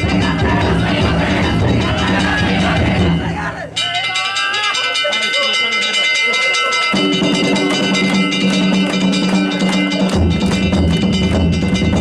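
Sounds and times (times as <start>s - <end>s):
drum beats: 0.0s - 5.1s, 6.8s - 12.0s
hand gongs ringing: 3.8s - 12.0s.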